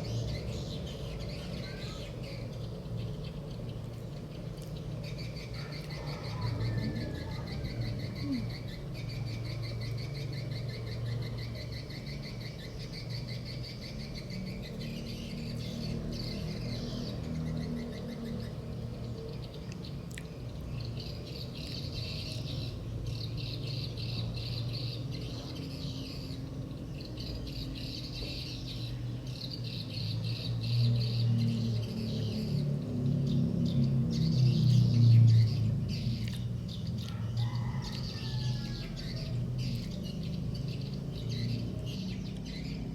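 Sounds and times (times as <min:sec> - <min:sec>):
high-pitched chirping trills: 0:05.1 - 0:16.9.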